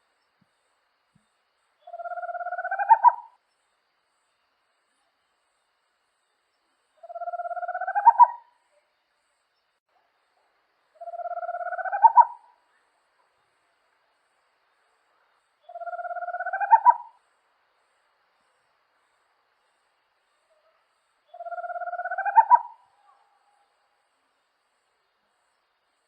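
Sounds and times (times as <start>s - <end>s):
owl trilling song: 1.8s - 3.4s, 7.0s - 8.9s, 11.0s - 12.9s, 15.6s - 17.2s, 20.4s - 23.8s.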